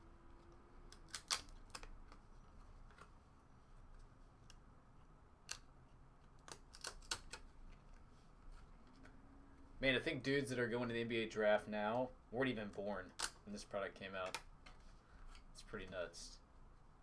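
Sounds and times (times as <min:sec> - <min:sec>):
cardboard cards clicking and snapping: 0:00.5 - 0:03.2, 0:05.4 - 0:08.0, 0:13.1 - 0:13.5.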